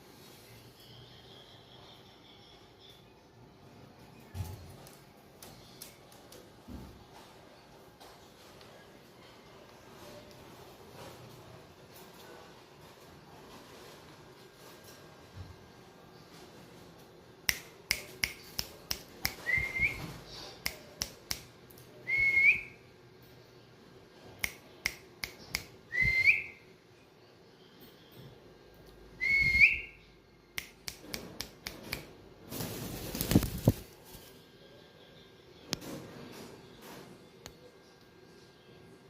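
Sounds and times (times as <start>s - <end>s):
sharp clicks and snaps: 17.5s - 19.4s, 20.6s - 21.9s, 24.4s - 25.8s, 30.6s - 32.1s
rising whistles: 25.9s - 26.6s, 29.2s - 30.1s
rustling: 32.4s - 34.5s.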